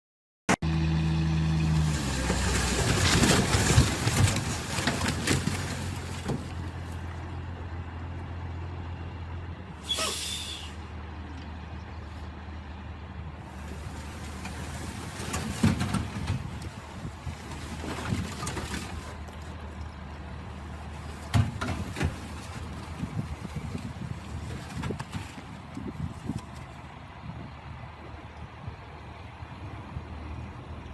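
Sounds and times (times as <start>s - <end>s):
heavy vehicle engine running: 0.6s - 30.9s
clattering and knocks: 2.2s - 6.8s, 14.1s - 19.2s, 21.0s - 23.2s
short hiss: 9.8s - 10.8s.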